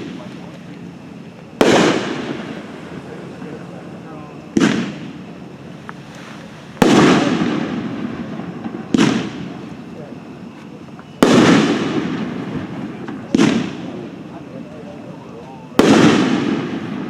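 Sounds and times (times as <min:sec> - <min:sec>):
firework booms with echo: 0:00.0 - 0:00.5, 0:01.5 - 0:03.6, 0:04.5 - 0:05.4, 0:06.7 - 0:10.0, 0:11.2 - 0:14.4, 0:15.7 - 0:17.0.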